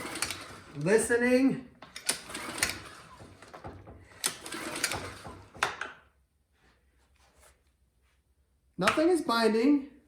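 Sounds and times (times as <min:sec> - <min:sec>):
recoil starter rope pulled: 0:00.0 - 0:06.0.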